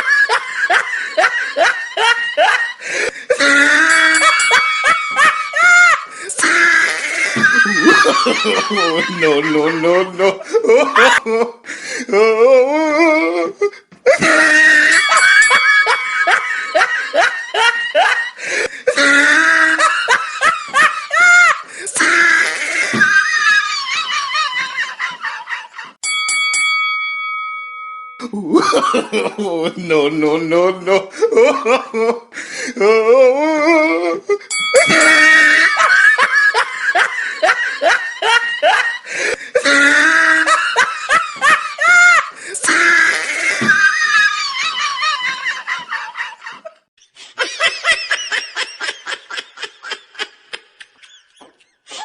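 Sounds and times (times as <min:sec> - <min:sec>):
laughing sound effect: 0:03.3 - 0:11.4.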